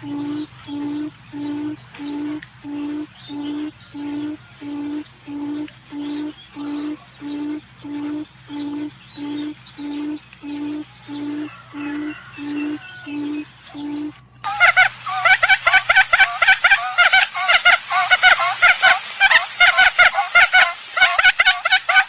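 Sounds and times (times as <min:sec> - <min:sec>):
faint high chirps: 0:00.0 - 0:14.4
quail lure call: 0:00.0 - 0:22.0.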